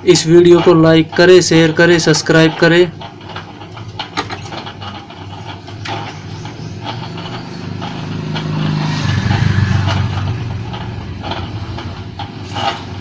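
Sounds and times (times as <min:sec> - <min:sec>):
motorcycle engine passing by: 0:05.9 - 0:13.0.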